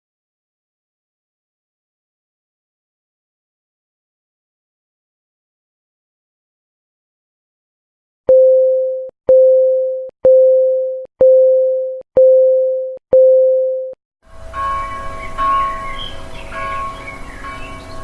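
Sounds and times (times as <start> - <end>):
church bells ringing: 14.3 - 18.0.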